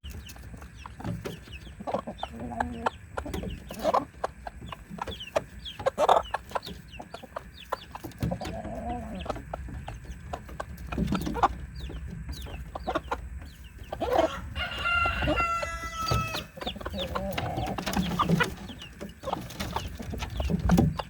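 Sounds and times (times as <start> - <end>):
chickens clucking: 0.0 - 21.0.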